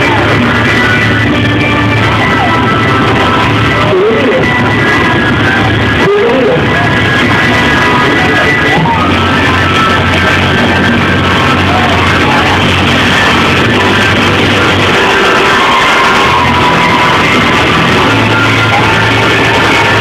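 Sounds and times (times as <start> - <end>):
loud band music: 0.0 - 20.0.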